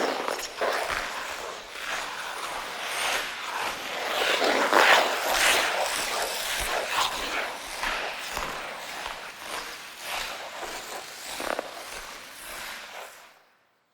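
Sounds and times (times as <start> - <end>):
ice skate blades scraping ice: 0.0 - 13.5.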